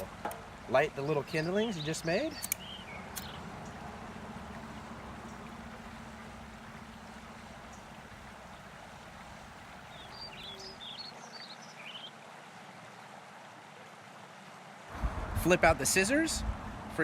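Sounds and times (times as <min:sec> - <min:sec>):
outdoor background noise: 0:00.0 - 0:17.0
high bird chirps: 0:01.4 - 0:03.4
low hum: 0:02.4 - 0:09.8, 0:14.9 - 0:17.0.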